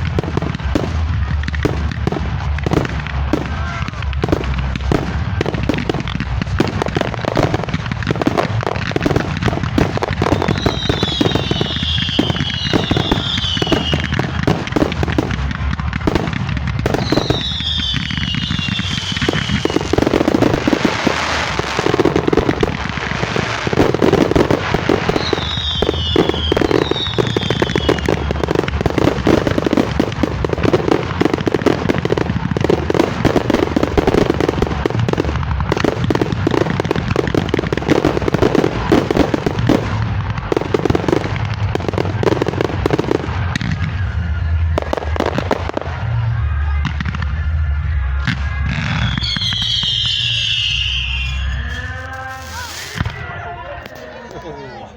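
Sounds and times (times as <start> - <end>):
fireworks crackling and banging: 0.0 - 54.9
falling firework whistles: 8.3 - 46.1, 46.9 - 53.4.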